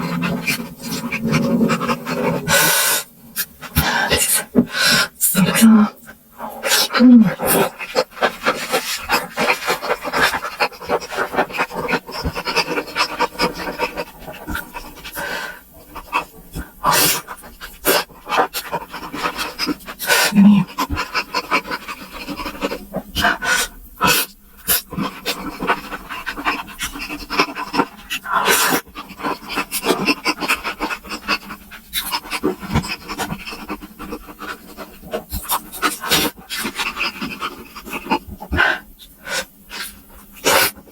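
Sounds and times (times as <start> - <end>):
person breathing: 0.0 - 7.8.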